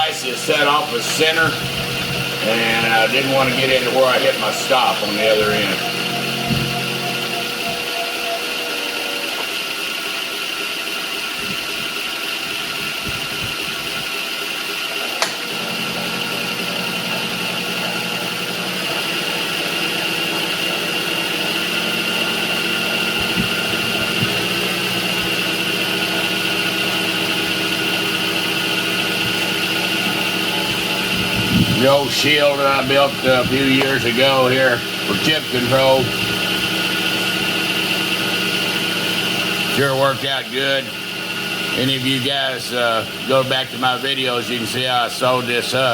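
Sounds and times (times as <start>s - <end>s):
milling machine cutting metal: 0.0s - 45.9s
sharp click: 15.2s - 15.4s.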